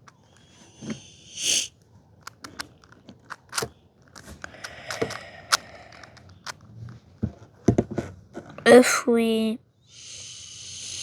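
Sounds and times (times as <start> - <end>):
puzzle cube clicking: 2.2 - 6.7
plastic scraping: 2.2 - 8.5.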